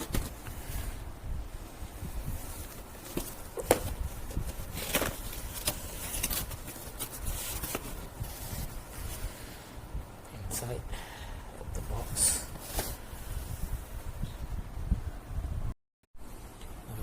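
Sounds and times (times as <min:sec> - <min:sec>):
packaging rustles: 0:00.0 - 0:00.7, 0:02.4 - 0:09.2.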